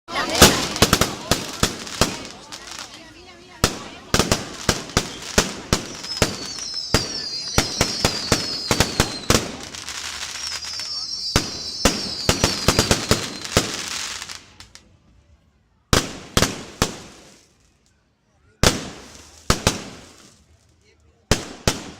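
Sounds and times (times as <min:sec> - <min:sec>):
fireworks bangs: 0:00.1 - 0:14.8, 0:15.9 - 0:17.5, 0:18.6 - 0:20.5, 0:21.3 - 0:21.9
fireworks crackle: 0:00.1 - 0:14.9, 0:18.6 - 0:21.9
high wavering whistle: 0:05.9 - 0:09.3.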